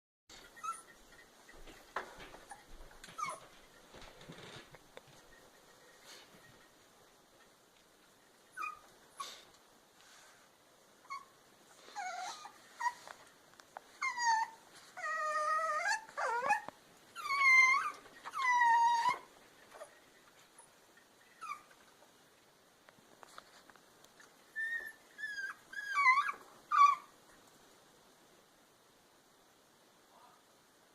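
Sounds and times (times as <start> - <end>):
puppy whimpering and whining: 0.4 - 1.3, 2.4 - 3.7, 8.5 - 9.4, 11.0 - 13.2, 14.0 - 21.9, 24.2 - 27.2.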